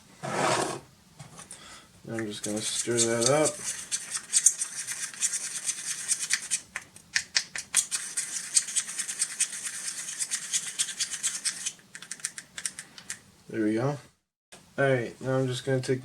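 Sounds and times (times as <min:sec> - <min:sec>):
stirrer scratching container: 0:02.2 - 0:06.7, 0:07.8 - 0:11.8.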